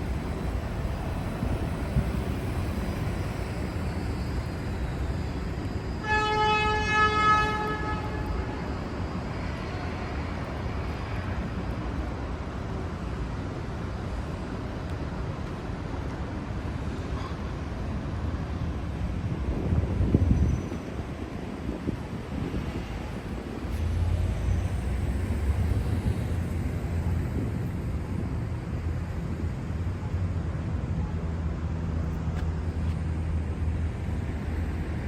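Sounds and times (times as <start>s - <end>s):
city street traffic rumble: 0.0s - 35.0s
vehicle horn: 6.0s - 8.4s.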